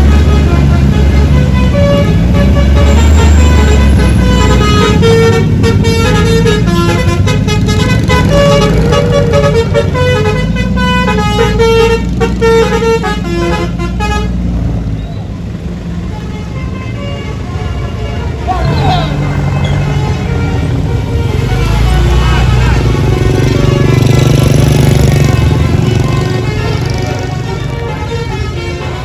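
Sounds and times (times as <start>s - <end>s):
bus engine rumble: 0.0s - 29.0s
bus horn playing a melody: 0.0s - 29.0s.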